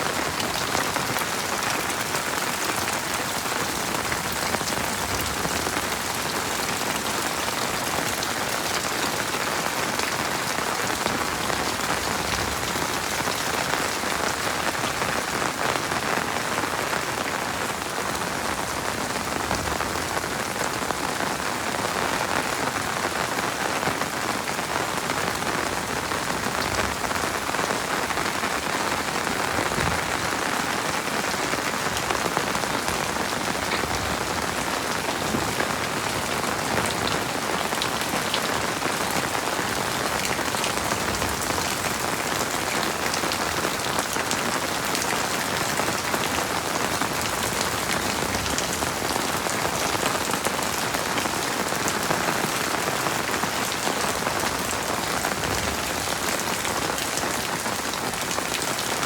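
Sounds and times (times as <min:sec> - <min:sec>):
heavy rain falling: 0:00.0 - 0:59.0.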